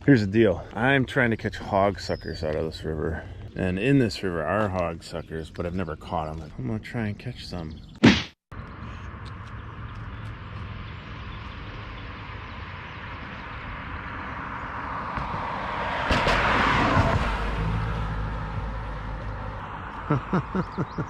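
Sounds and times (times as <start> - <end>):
motor vehicle passing by: 8.6 - 21.0.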